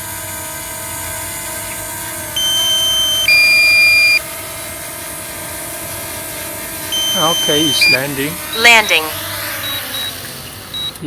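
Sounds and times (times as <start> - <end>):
drone propeller hum: 0.0 - 11.0
two-tone electronic warning beep: 2.4 - 4.3, 6.9 - 11.0.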